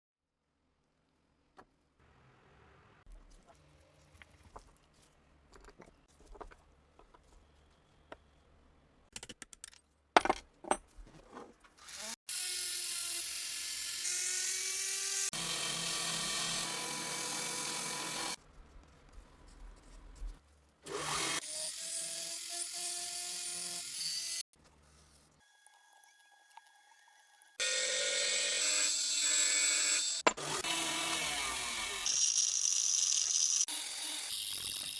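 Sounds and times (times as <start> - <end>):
small power tool whining: 25.5 - 34.9.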